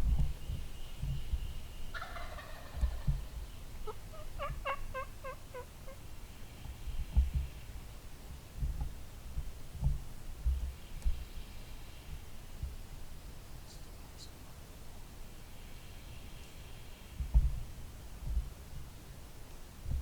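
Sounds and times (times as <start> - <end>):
low thumps on microphone: 0.0 - 1.6, 2.8 - 3.5, 7.0 - 7.6, 8.3 - 11.2, 17.2 - 18.6
turkey gobbling: 1.9 - 6.0.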